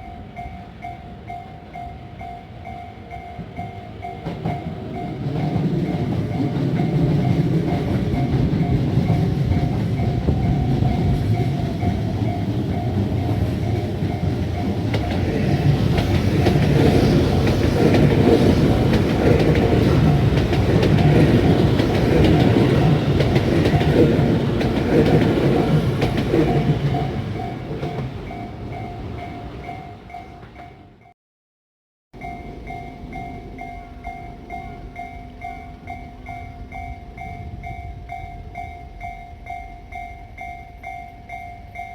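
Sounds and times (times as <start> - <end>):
crossing warning bell ringing: 0.0 - 31.1, 32.2 - 41.9
train wheels clattering on rails: 1.7 - 30.7.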